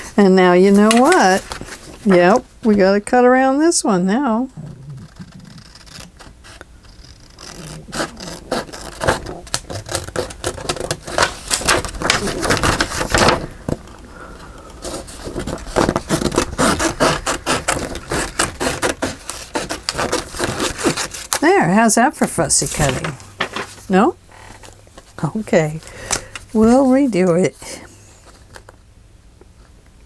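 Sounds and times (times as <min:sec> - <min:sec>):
scissors snipping paper: 0:00.7 - 0:02.4, 0:05.0 - 0:13.4, 0:14.9 - 0:21.4.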